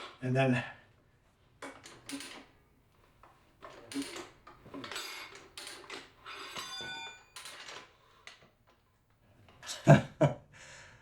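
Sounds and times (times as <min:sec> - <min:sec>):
short metallic ring: 0:06.3 - 0:07.6.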